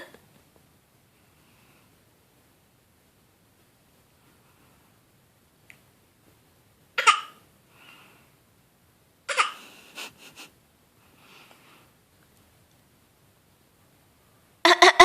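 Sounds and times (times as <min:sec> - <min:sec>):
baby fake coughing: 0:07.0 - 0:07.4, 0:09.3 - 0:09.6, 0:14.7 - 0:15.0.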